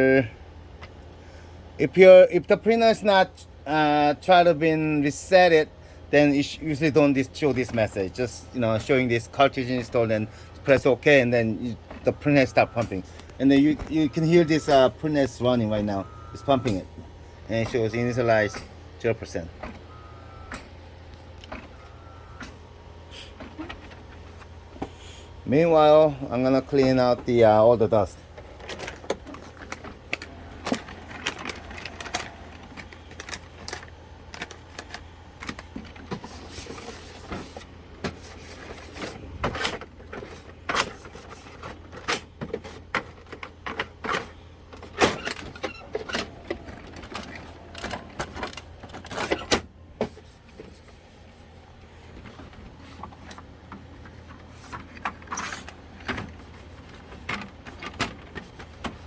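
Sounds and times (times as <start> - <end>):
printer motor hum: 7.2 - 37.9, 44.5 - 50.0.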